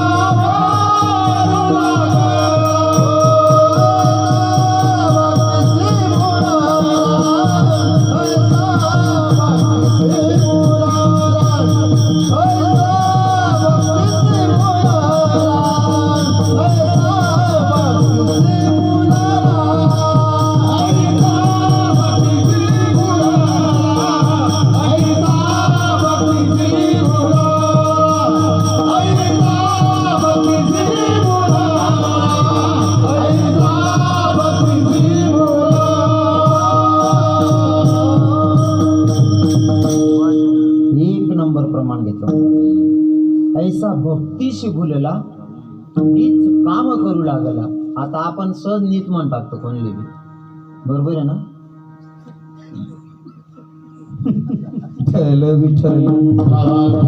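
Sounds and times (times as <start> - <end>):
drum beat: 0.0 - 40.3
hand cymbals: 0.0 - 41.3
voices singing devotional melody: 0.0 - 42.7, 43.6 - 57.0
harmonium drone: 0.0 - 46.0, 46.6 - 55.0
steady held tones: 0.0 - 55.4.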